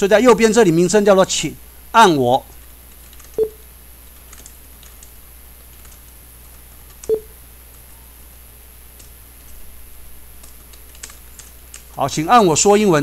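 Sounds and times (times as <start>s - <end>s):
keyboard typing: 2.9s - 8.0s, 9.0s - 9.7s, 10.4s - 12.0s.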